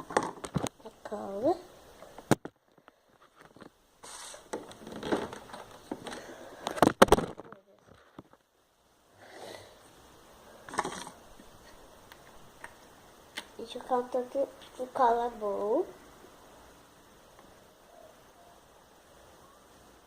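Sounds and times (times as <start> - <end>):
plastic bottle rustling and scraping: 3.1 - 8.4, 10.7 - 11.8.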